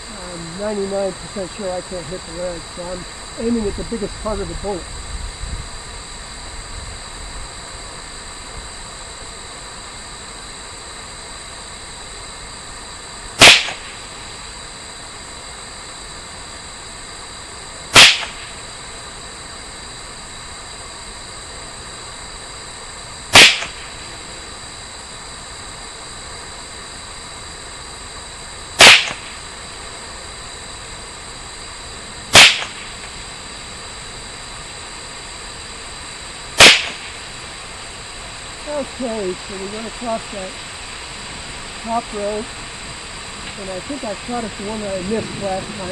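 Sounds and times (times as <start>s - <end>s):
rifle shots: 13.4s - 14.1s, 18.0s - 18.6s, 23.3s - 24.0s, 28.8s - 29.4s, 32.3s - 33.2s, 36.6s - 37.2s.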